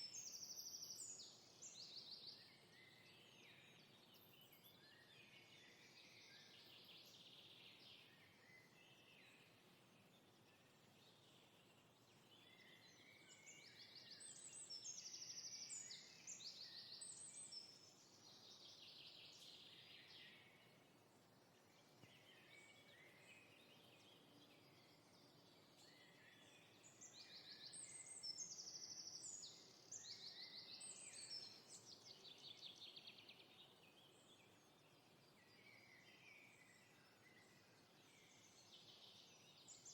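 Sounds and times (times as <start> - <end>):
outdoor ambient hiss: 0.0 - 39.9
songbirds singing: 0.0 - 39.9.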